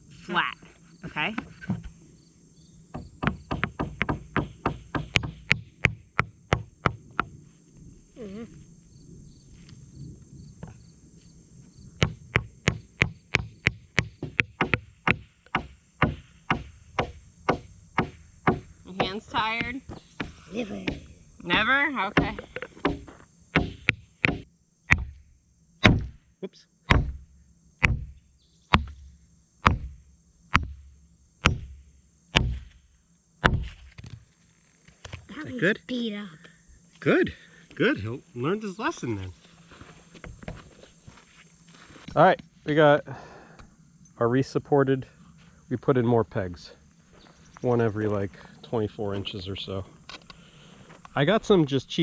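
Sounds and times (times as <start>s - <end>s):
hammer driving stake into ground: 3.0s - 7.3s, 12.0s - 25.2s, 25.8s - 26.2s, 26.9s - 34.3s.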